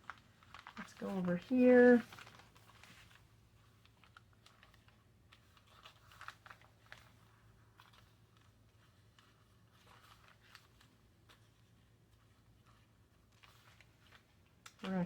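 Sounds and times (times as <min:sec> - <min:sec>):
paper rustling: 0:00.0 - 0:15.0.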